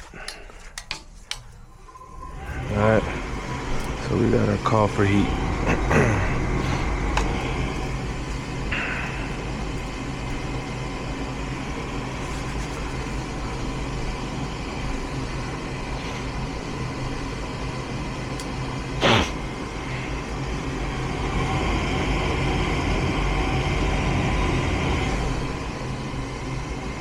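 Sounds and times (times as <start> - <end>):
furnace motor hum: 0.0 - 27.0.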